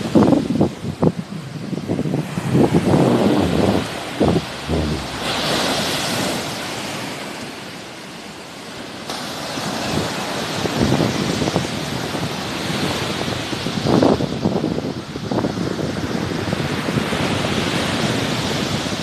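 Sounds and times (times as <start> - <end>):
wind rumbling on microphone: 0.0 - 6.9
sea waves washing onto shore: 0.0 - 15.2.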